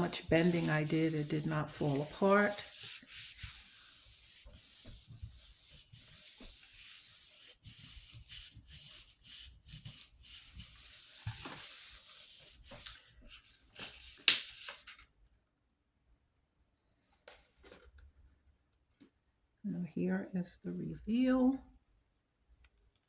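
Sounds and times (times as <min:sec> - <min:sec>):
paper rubbing on gel plate: 0:00.0 - 0:13.0
paper rustle: 0:10.2 - 0:15.1.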